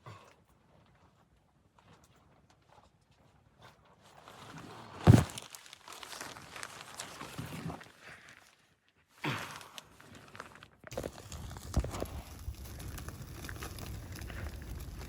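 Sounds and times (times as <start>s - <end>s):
crunching footsteps in snow: 4.5s - 7.9s, 10.2s - 15.0s.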